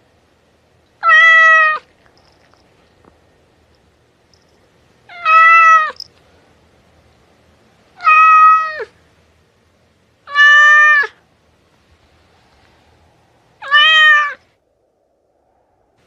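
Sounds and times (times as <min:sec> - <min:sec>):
cat meowing: 0:01.0 - 0:01.9, 0:05.1 - 0:06.0, 0:08.0 - 0:08.9, 0:10.2 - 0:11.2, 0:13.6 - 0:14.5.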